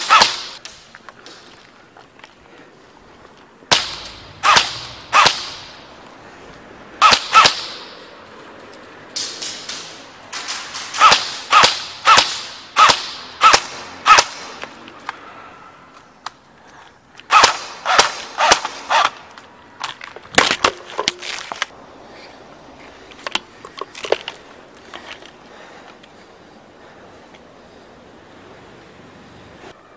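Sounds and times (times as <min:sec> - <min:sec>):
airsoft gun shots with echo: 0:03.7 - 0:05.7, 0:07.0 - 0:07.9, 0:10.4 - 0:14.6, 0:17.3 - 0:19.2.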